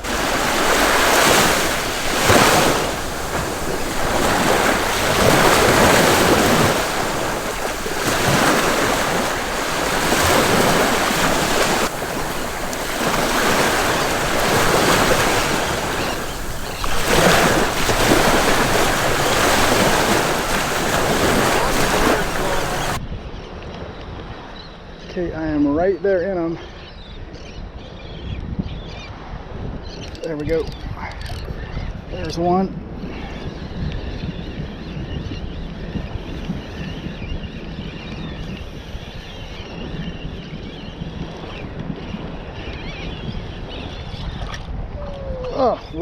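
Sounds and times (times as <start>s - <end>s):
ocean surf washing on beach: 0.0s - 23.0s
wind buffeting microphone: 0.0s - 23.3s.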